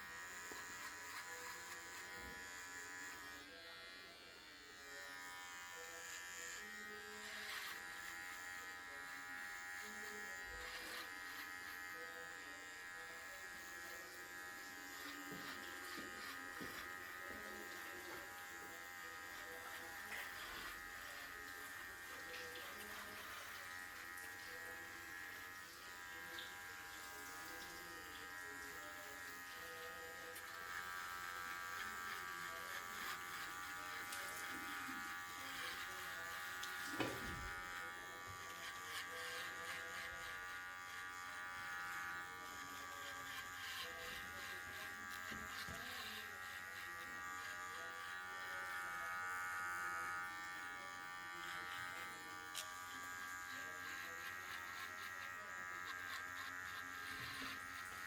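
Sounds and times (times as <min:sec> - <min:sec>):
electric hair clippers buzzing: 0:00.0 - 0:58.0.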